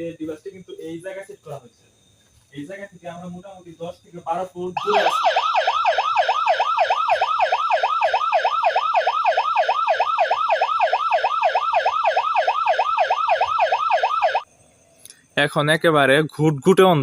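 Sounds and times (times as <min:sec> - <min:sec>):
electronic siren sweeping up and down: 0:04.8 - 0:14.5.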